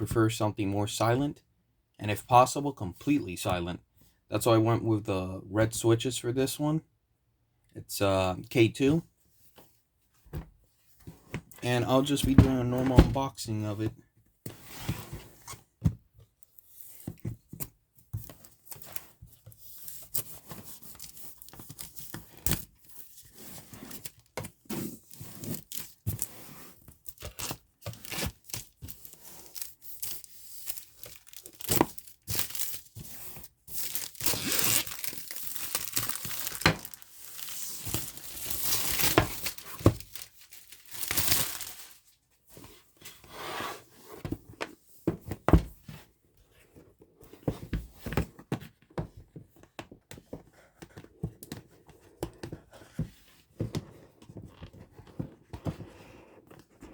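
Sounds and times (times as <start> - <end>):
wrapping tearing and crinkling: 27.0 - 42.2.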